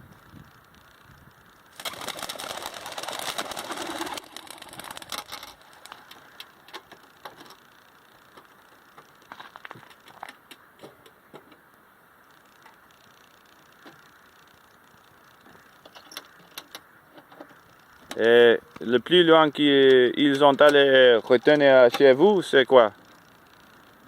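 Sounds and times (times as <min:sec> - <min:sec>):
faint flaps and clicks: 0:00.0 - 0:24.0
pigeons clattering wingbeats: 0:01.8 - 0:07.6.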